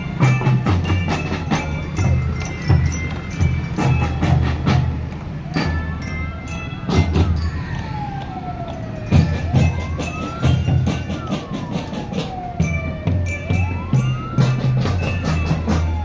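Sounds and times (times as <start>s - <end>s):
siren-like sliding wail: 5.4s - 16.0s.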